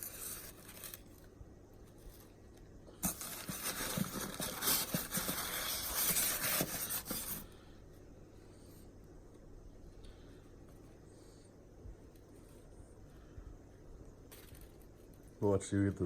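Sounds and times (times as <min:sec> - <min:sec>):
packaging rustling and crinkling: 0:00.0 - 0:01.3, 0:03.0 - 0:07.4.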